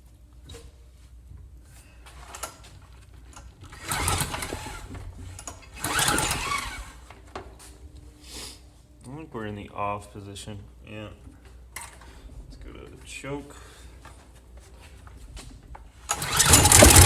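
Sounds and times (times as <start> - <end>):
recoil starter cranking engine: 3.7 - 7.0, 16.1 - 17.0.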